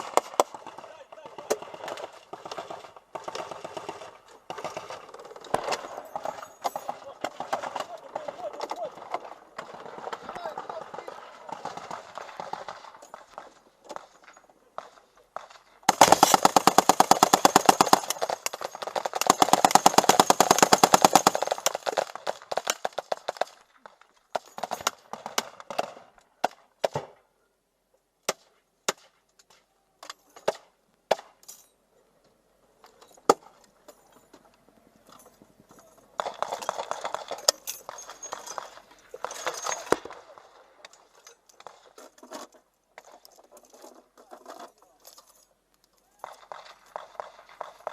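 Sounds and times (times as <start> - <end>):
machine-gun bursts: 15.9 - 23.6.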